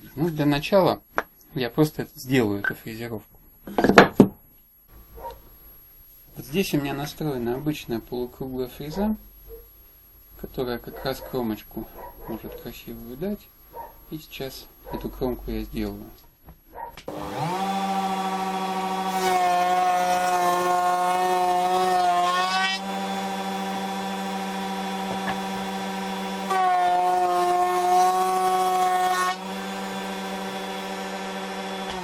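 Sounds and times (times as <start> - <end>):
electric router cutting wood: 17.1 - 32.0.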